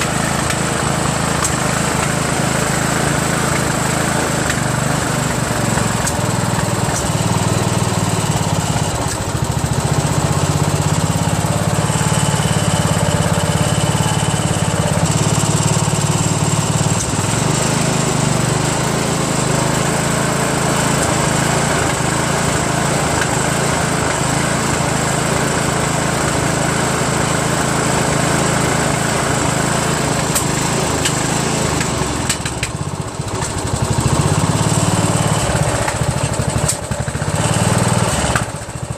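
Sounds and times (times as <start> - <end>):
lawn tractor engine running: 0.0 - 38.9.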